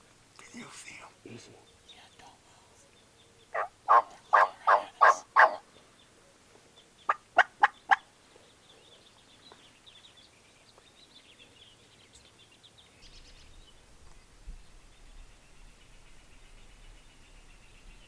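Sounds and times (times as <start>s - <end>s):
faint high songbird chirping: 0.4s - 18.0s
turkey clucking: 7.1s - 8.0s.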